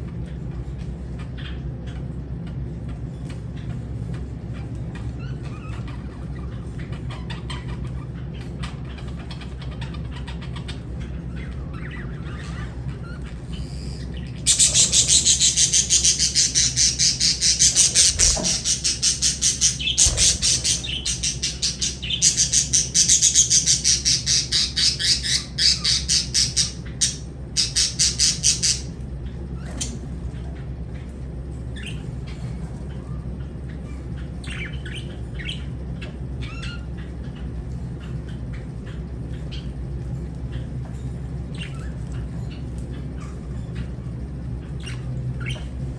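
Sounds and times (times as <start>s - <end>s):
bird chirping high-pitched: 9.8s - 29.0s
low hum: 10.8s - 23.4s.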